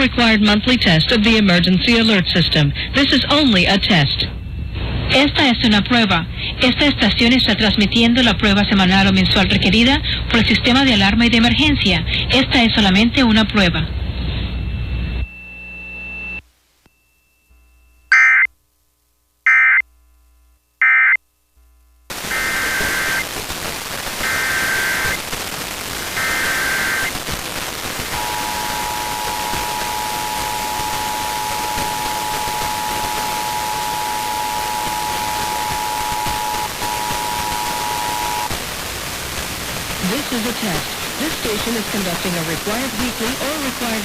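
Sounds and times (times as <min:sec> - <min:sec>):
radio hiss: 0:22.1 - 0:44.0
alert data tone bursts: 0:22.3 - 0:23.3, 0:24.2 - 0:25.2, 0:28.0 - 0:38.5
two-tone attention signal: 0:28.1 - 0:38.5.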